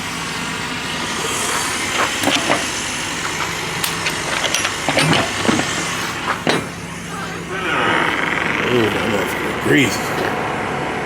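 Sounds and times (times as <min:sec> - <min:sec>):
truck engine idling: 0:00.0 - 0:11.0
clicks and knocks: 0:01.9 - 0:06.8.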